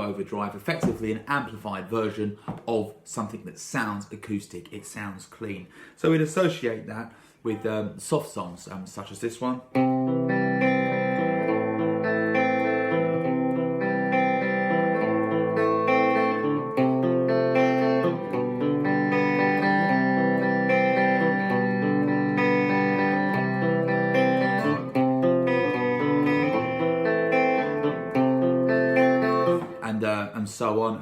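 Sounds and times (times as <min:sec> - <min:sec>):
clean electric guitar chords: 0:09.7 - 0:29.8.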